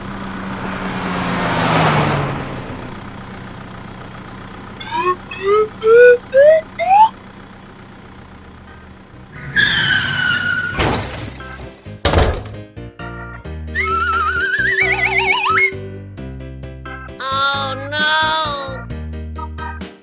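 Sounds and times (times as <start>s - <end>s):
rising whistle-like notes: 4.8s - 7.2s, 13.8s - 15.9s.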